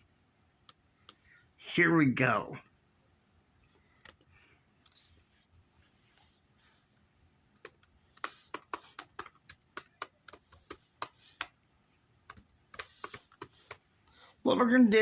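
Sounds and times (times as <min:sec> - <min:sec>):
keyboard keys clicking: 0:07.6 - 0:11.6, 0:12.3 - 0:13.8.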